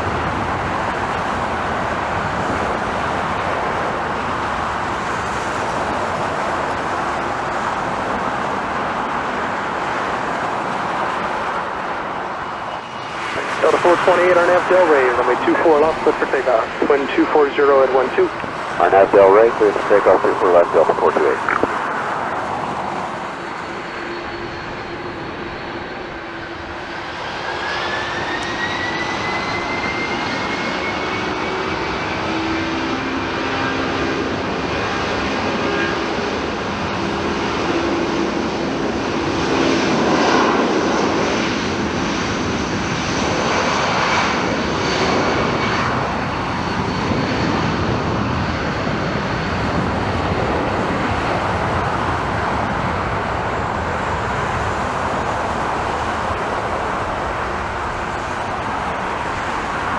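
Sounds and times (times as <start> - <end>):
jet engines roaring: 0.0 - 59.9
jet fan whine rising in pitch: 11.0 - 34.5, 44.1 - 59.9.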